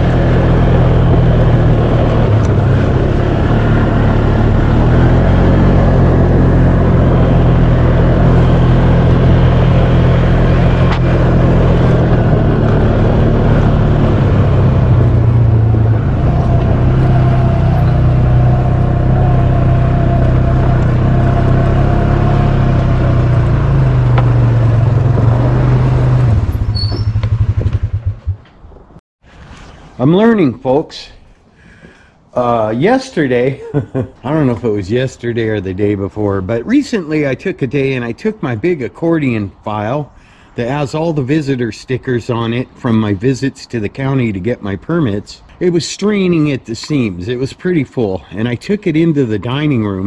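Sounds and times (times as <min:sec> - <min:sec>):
tractor diesel engine running: 0:00.0 - 0:28.9.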